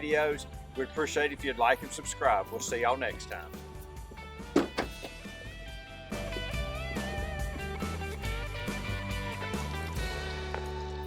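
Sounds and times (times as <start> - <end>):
guitar music: 3.2 - 11.0.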